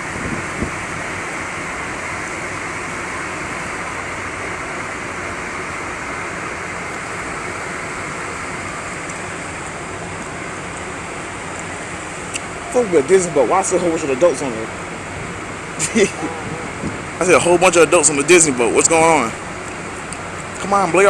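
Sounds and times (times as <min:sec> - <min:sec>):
sea rushing: 0:00.0 - 0:21.0
wind rushing: 0:15.1 - 0:18.0.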